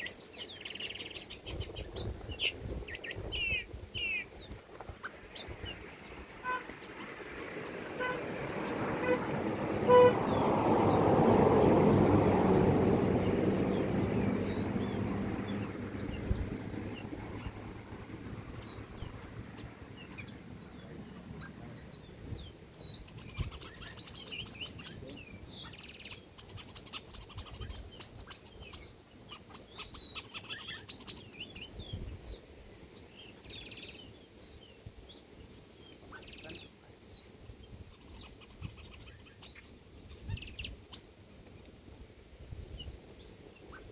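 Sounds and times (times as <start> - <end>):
small birds chirping: 0.0 - 41.8, 42.6 - 43.9
motor vehicle driving away: 6.5 - 22.2.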